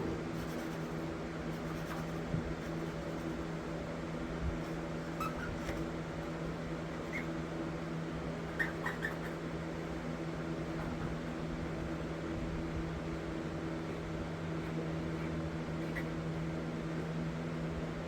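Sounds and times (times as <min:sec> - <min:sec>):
steady machine hum: 0:00.0 - 0:05.1.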